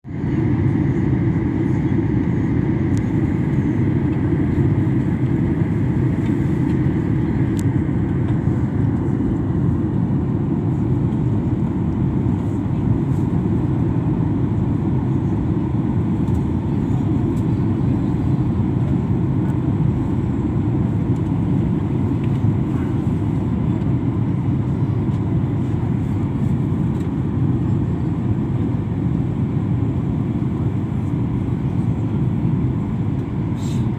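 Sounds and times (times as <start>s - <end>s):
airliner cabin rumble: 0.2s - 33.9s.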